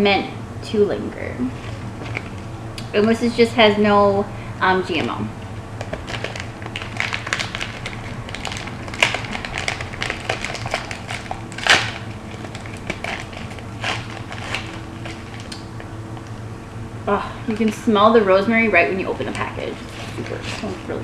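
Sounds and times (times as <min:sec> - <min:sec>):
snack package crinkling: 0:05.7 - 0:16.4.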